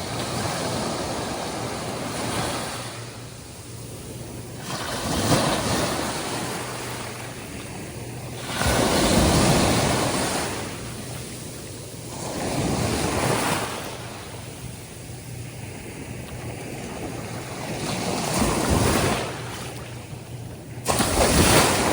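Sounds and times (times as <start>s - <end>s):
surf breaking on sandy beach: 4.6s - 14.7s, 20.8s - 21.9s.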